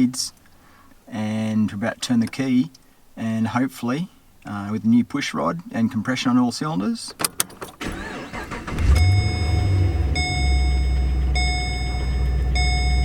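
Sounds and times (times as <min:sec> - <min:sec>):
car engine idling: 0:07.9 - 0:13.0.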